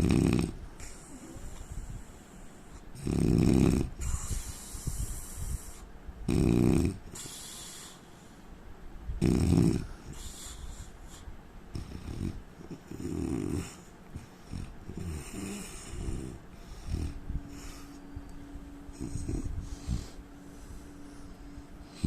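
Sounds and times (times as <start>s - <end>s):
man snoring: 0.0s - 1.4s, 3.0s - 4.9s, 6.3s - 7.1s, 9.2s - 9.9s, 11.7s - 13.8s, 14.5s - 18.0s, 18.9s - 20.2s
uneven breathing: 4.0s - 5.9s, 7.1s - 8.6s, 9.8s - 12.9s, 13.6s - 22.0s.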